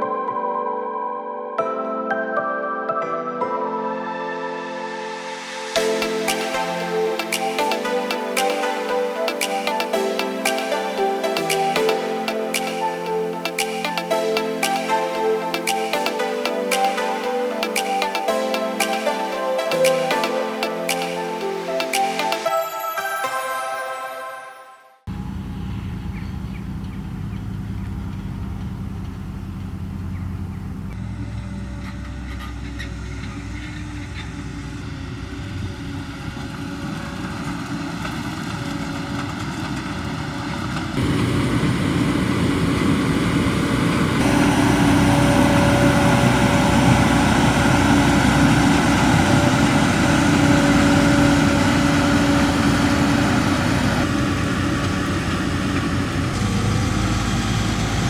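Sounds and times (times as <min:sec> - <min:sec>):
diesel farm machinery running: 0:25.1 - 0:58.0.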